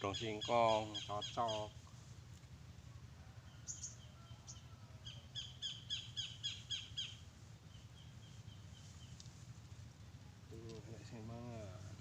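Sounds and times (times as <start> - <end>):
bird chirping: 0.0 - 1.8, 3.4 - 9.3.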